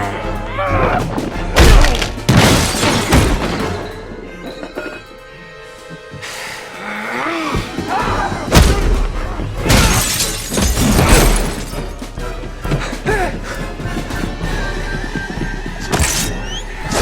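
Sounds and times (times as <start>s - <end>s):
dramatic film score: 0.0s - 17.0s
glass shattering: 1.6s - 3.8s, 9.7s - 11.8s.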